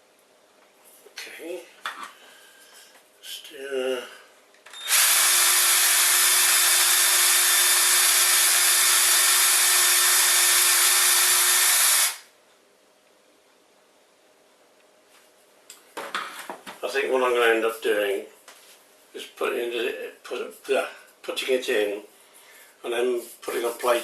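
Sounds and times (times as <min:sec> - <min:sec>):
power tool humming: 0:04.8 - 0:12.3.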